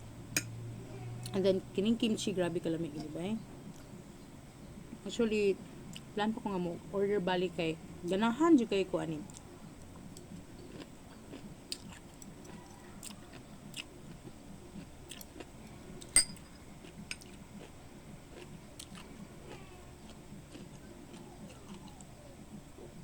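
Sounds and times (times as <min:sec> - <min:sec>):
person chewing: 0:09.3 - 0:09.5, 0:10.1 - 0:16.2, 0:16.8 - 0:22.2.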